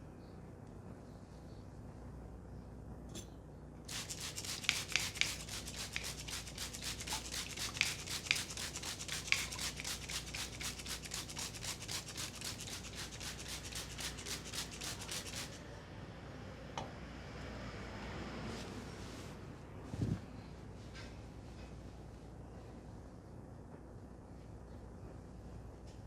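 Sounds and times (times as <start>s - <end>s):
hands rubbing hair: 3.9s - 15.6s.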